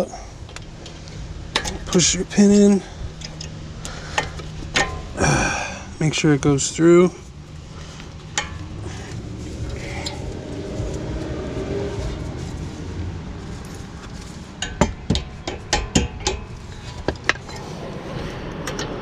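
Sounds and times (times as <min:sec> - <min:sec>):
steady low rumble: 0:00.0 - 0:19.0
hammer tapping metal: 0:14.6 - 0:16.5.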